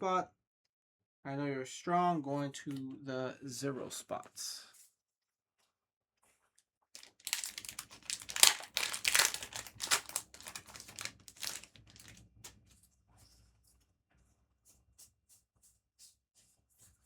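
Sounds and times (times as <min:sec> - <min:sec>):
foil wrapper crinkling and tearing: 0:07.0 - 0:12.3.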